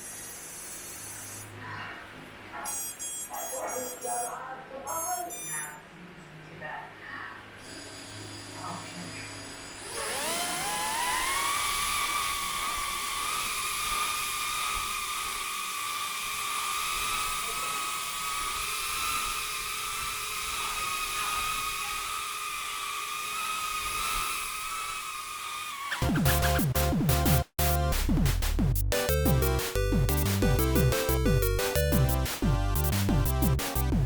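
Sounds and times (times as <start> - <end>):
drone motors whirring: 7.6 - 26.9.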